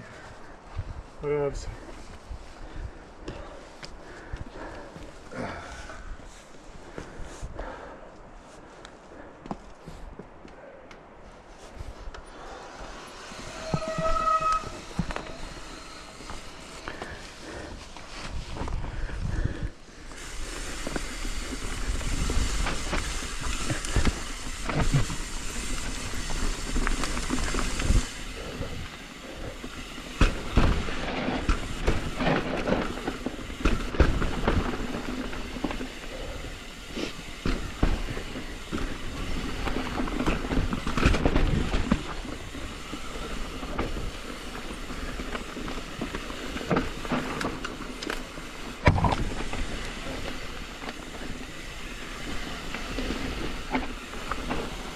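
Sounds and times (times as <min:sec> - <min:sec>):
bike tyres rumbling over dirt: 0:11.5 - 0:54.9
bike chain and frame rattling: 0:12.4 - 0:54.9
rush of air: 0:14.7 - 0:45.1.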